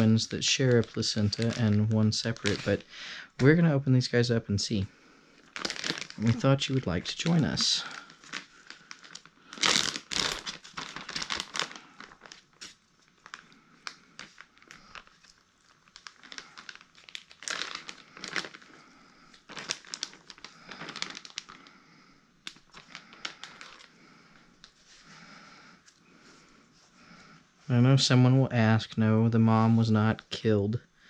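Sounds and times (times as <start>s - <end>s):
plastic wrapping crinkling: 0.0s - 3.7s, 5.3s - 21.8s, 22.4s - 24.9s.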